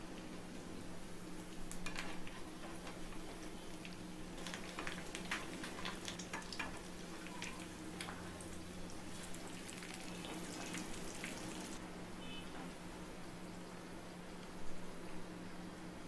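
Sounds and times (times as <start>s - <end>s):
chicken frying in hot oil: 0.0s - 12.4s.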